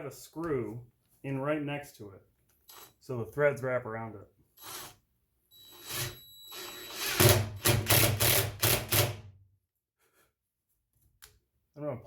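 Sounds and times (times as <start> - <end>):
power drill driving screw: 2.6 - 3.0, 4.6 - 9.2.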